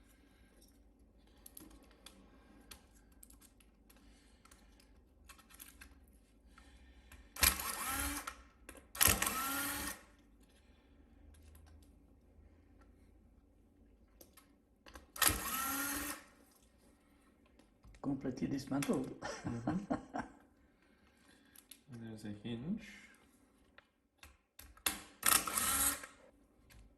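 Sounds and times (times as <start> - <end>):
small electric motor whirring: 7.4 - 8.4, 9.0 - 10.1, 15.2 - 16.3, 25.2 - 26.2.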